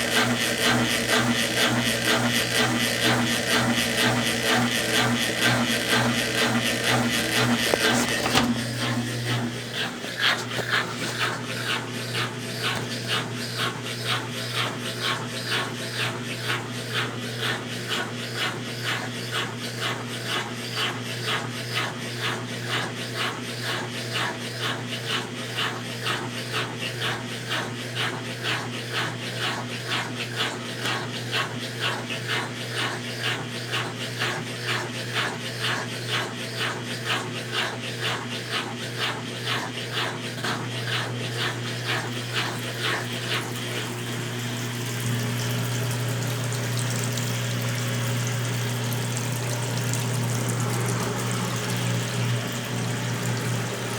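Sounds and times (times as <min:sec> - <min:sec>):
washing machine swishing cloth and water: 0:00.0 - 0:16.4, 0:39.1 - 0:53.9
washing machine motor hum: 0:00.0 - 0:17.0, 0:40.3 - 0:53.9.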